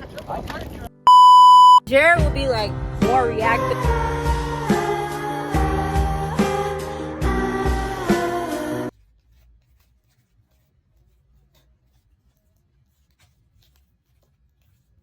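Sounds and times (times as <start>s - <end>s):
background music: 1.9s - 8.9s.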